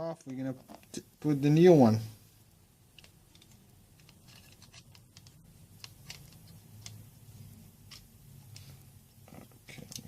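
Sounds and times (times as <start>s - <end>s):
faint low hum: 0.0s - 10.0s
phone parts clicking and scratching: 2.9s - 7.0s, 7.8s - 8.7s.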